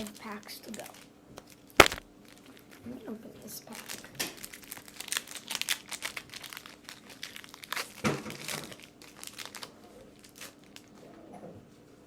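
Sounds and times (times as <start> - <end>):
foil wrapper tearing and crinkling: 1.8 - 2.0, 3.8 - 10.9.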